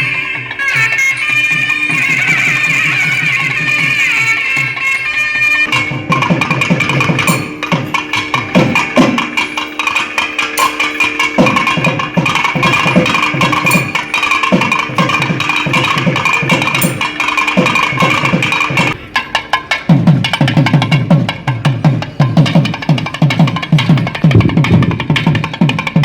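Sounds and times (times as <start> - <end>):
droning reed pipe: 0.0 - 19.0
rapid dense drum strokes: 5.7 - 19.0, 19.8 - 26.0.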